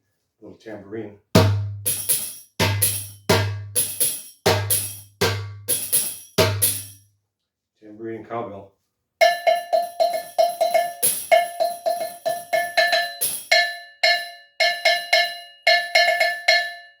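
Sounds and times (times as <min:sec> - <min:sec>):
cowbell struck: 0:01.4 - 0:07.0, 0:09.2 - 0:17.0
tambourine struck: 0:01.4 - 0:07.0, 0:09.2 - 0:17.0.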